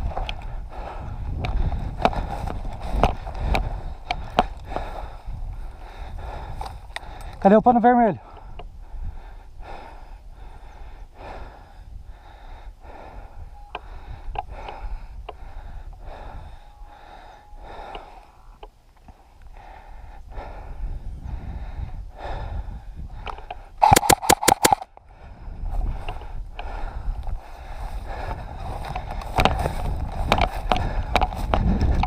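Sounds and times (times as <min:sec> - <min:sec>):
person breathing: 0:00.4 - 0:07.4, 0:08.2 - 0:18.6, 0:19.2 - 0:23.8, 0:25.0 - 0:32.0
airsoft rifle firing burst: 0:23.8 - 0:24.9.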